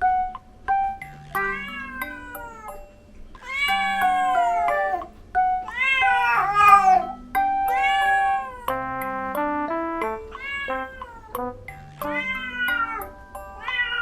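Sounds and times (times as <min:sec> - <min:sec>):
background music: 0:00.0 - 0:14.0
cat yowling: 0:01.4 - 0:02.8, 0:03.4 - 0:08.9, 0:10.3 - 0:11.4, 0:12.0 - 0:14.0.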